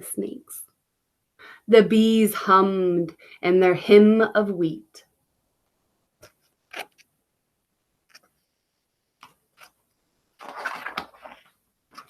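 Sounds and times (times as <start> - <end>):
paper page rustling: 9.2 - 12.0.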